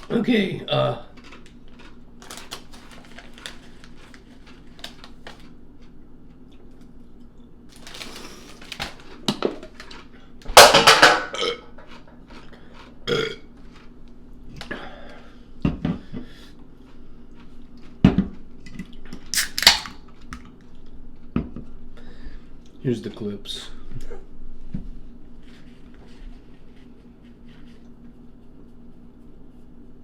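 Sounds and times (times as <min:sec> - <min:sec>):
loud drawn-out burp: 0:11.3 - 0:11.7, 0:13.1 - 0:13.5.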